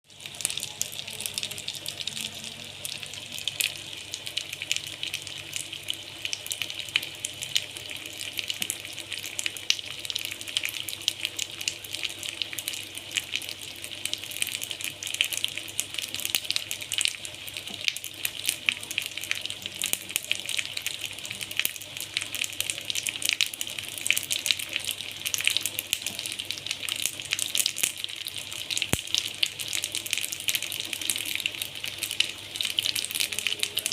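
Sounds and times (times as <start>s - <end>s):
hot oil sizzling in a pan: 0.0s - 33.9s.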